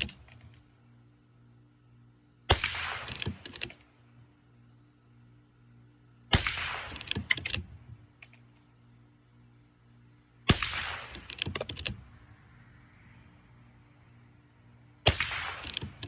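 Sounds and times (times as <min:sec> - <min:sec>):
rifle shots: 0:02.5 - 0:03.8, 0:06.3 - 0:07.7, 0:10.5 - 0:12.0, 0:15.0 - 0:16.0
rifle action clicks: 0:02.7 - 0:03.8, 0:06.5 - 0:08.4, 0:10.6 - 0:12.0, 0:15.1 - 0:16.0.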